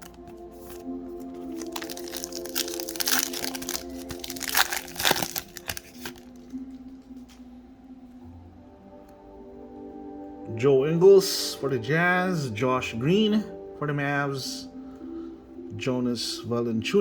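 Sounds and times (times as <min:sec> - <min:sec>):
foil wrapper crinkling and tearing: 0:00.0 - 0:06.6
soft background music: 0:00.0 - 0:17.0.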